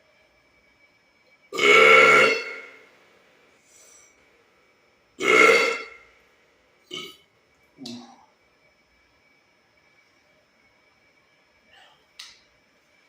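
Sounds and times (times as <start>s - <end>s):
man burping loudly: 1.6s - 2.7s, 5.2s - 6.0s, 6.9s - 7.2s.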